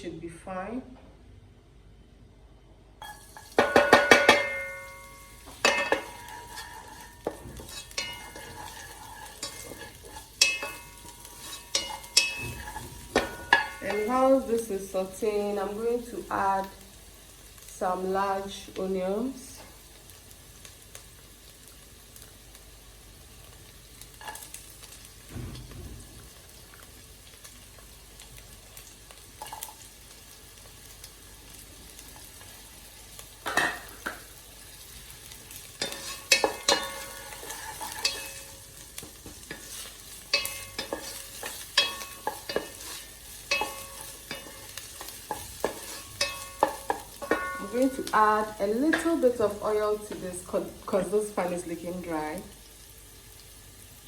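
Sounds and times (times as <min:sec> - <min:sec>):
utensil knocking and scraping pan: 0:03.0 - 0:14.2, 0:35.8 - 0:48.2
vegetables sizzling in oil: 0:03.0 - 0:54.0.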